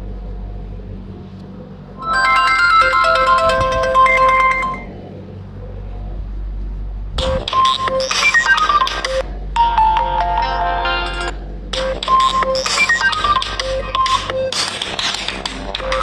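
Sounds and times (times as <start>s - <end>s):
low steady hum: 0.0s - 14.5s
phone ringtone melodies: 2.0s - 4.9s.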